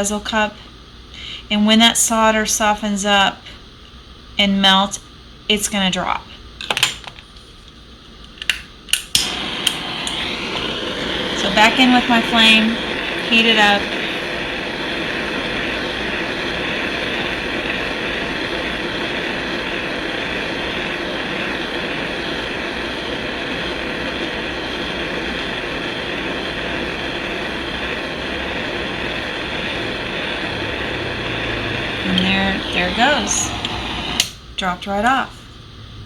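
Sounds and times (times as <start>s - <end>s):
torch flame hissing: 9.0s - 34.7s.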